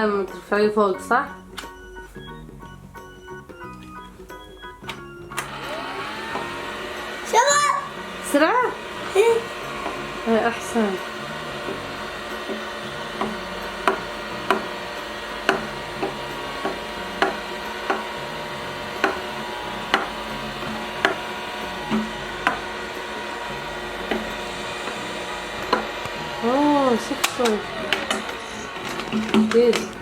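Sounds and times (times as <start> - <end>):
toy vacuum motor whirring: 5.3 - 30.0
sharp clicks and taps: 11.0 - 14.8, 15.4 - 18.1, 19.0 - 19.3, 19.9 - 21.2.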